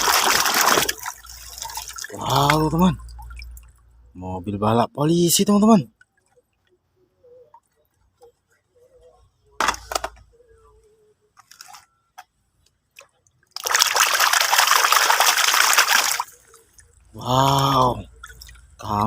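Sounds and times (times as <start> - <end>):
rush of splashing water: 0.0 - 3.8, 13.5 - 16.9
water splashing: 0.0 - 4.1, 12.8 - 19.0.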